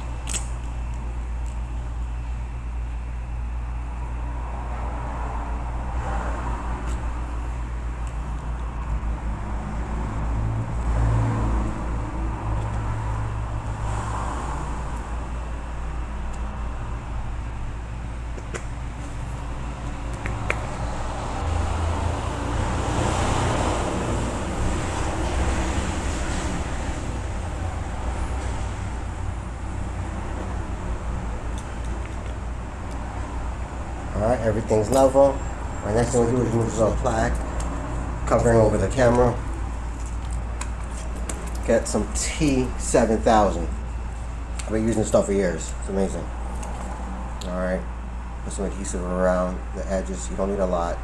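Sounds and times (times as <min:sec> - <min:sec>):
low rumble and hum: 0:00.0 - 0:50.1.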